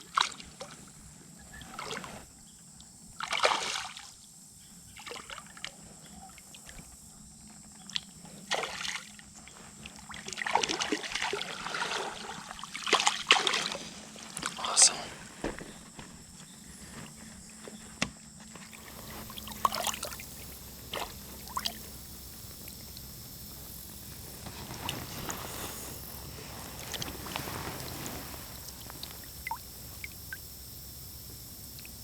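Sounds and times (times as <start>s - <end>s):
water sloshing around legs: 18.7s - 30.4s.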